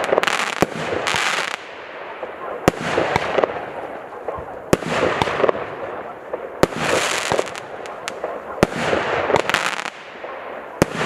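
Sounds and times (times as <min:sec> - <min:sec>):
fireworks bangs: 0:00.0 - 0:11.0
hissing crackle of fireworks: 0:00.0 - 0:11.0.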